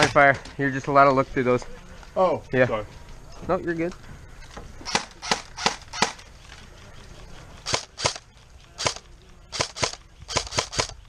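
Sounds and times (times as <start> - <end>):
airsoft gun shots: 4.8 - 6.2, 7.6 - 8.2, 8.8 - 11.0.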